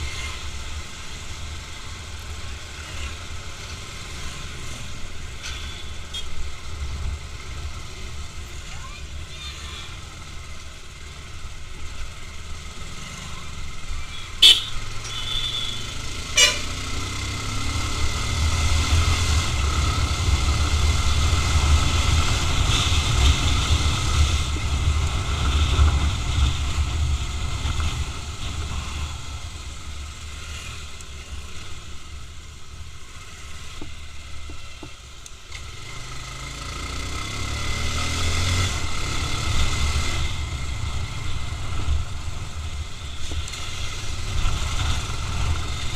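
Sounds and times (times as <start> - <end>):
vehicle engine: 0.0 - 45.9
short horn toot: 14.4 - 16.8.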